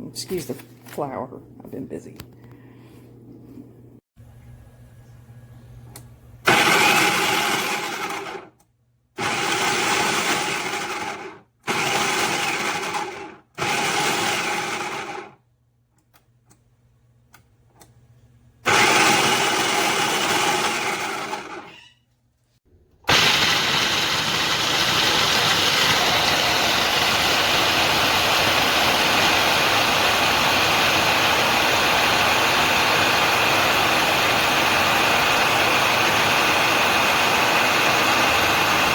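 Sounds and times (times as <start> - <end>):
food chopper motor running: 6.5 - 8.6, 9.2 - 15.4, 18.6 - 21.7, 23.1 - 38.9.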